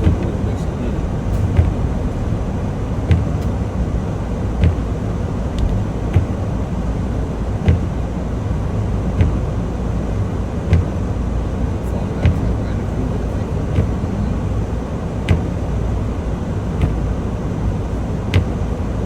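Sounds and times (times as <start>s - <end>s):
truck engine and road rumble: 0.0s - 19.0s
short knock: 5.5s - 6.4s.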